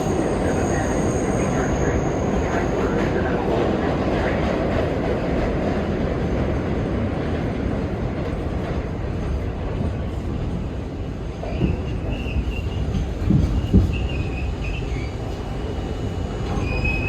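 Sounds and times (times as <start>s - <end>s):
subway car rumbling on track: 0.0s - 17.0s
wheels and brakes squealing: 11.4s - 15.3s, 16.4s - 17.0s.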